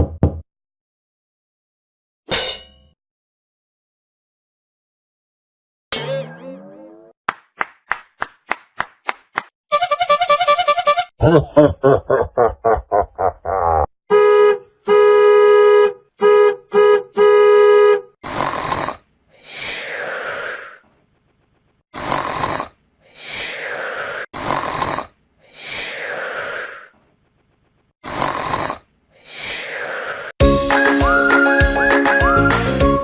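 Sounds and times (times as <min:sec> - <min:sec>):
horn-like tone blaring: 0:14.1 - 0:18.1
snoring sound effect: 0:18.2 - 0:20.9, 0:21.9 - 0:27.1, 0:28.0 - 0:30.4.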